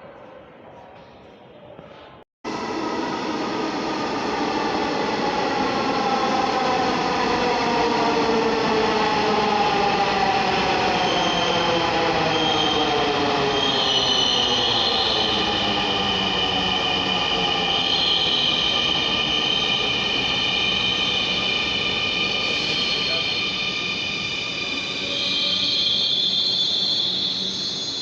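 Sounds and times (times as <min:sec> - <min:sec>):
high wheel squeal: 0:19.8 - 0:28.0.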